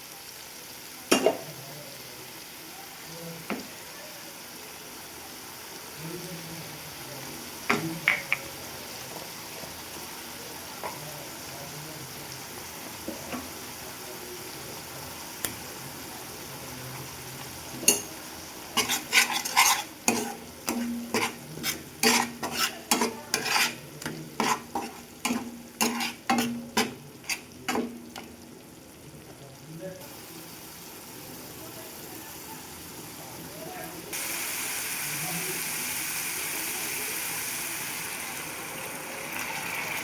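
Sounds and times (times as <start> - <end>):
curry sizzling in hot oil: 0.0 - 40.0
spoon scraping a pan: 17.5 - 28.6.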